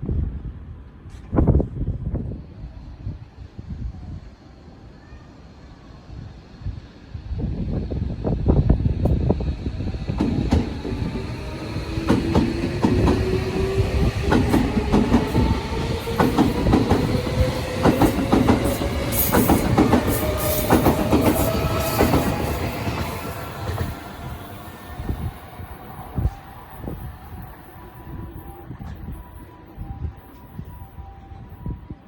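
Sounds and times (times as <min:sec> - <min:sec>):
train motor whine rising: 0:09.0 - 0:31.6
train wheels clacking over joints: 0:10.1 - 0:24.2.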